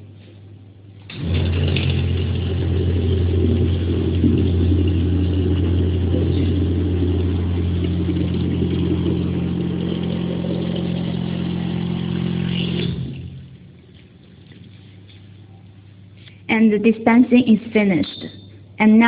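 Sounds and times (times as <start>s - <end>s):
dispensing pump humming: 0.0s - 19.0s
milk pouring into bottle: 1.1s - 15.4s.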